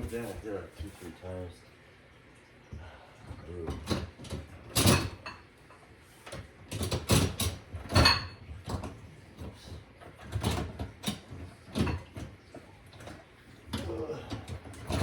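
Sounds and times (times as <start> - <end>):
dishwasher knocks and scrapes: 6.7 - 9.0, 10.2 - 12.4, 14.3 - 15.0.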